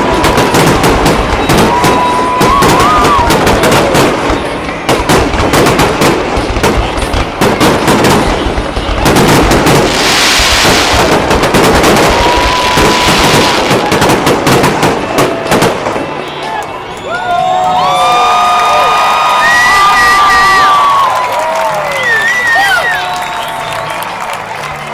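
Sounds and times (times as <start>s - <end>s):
fireworks bangs and crackles: 0.0s - 18.3s
fireworks hissing: 8.1s - 14.7s.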